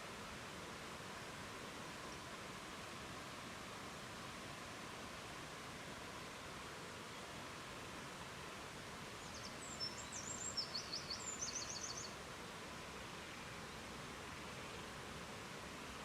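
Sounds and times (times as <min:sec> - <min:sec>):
river water rushing: 0:00.0 - 0:16.0
songbird singing: 0:09.2 - 0:12.2.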